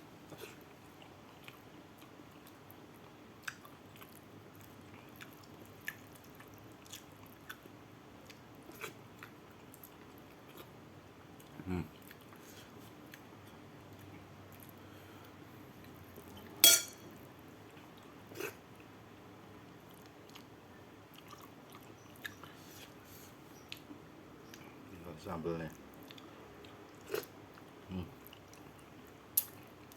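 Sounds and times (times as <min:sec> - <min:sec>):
chewing and mouth clicks: 0:00.3 - 0:10.7, 0:13.9 - 0:14.8, 0:19.7 - 0:20.5, 0:21.1 - 0:22.6, 0:25.9 - 0:29.9.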